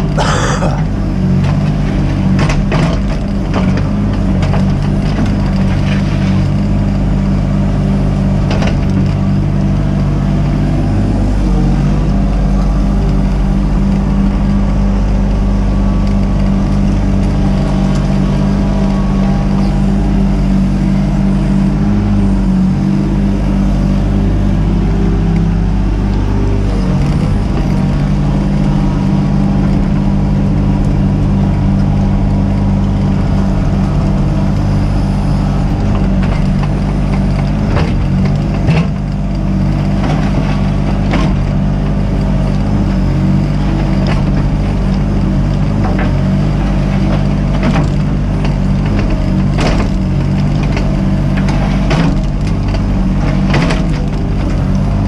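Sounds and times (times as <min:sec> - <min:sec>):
excavator diesel engine running: 0:00.0 - 0:55.0.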